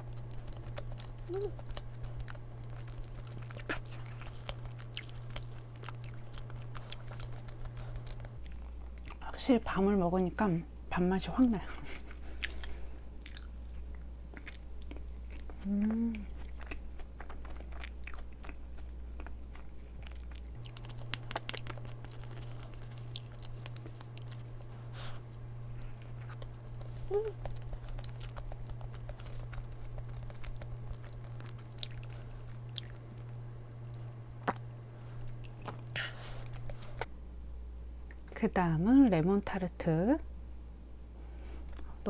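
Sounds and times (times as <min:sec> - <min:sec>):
hum-like mouth sound: 0:00.0 - 0:08.5, 0:15.4 - 0:16.5, 0:20.6 - 0:37.1
person chewing cake: 0:00.0 - 0:09.3, 0:11.9 - 0:37.1
steady low hum: 0:00.0 - 0:42.0.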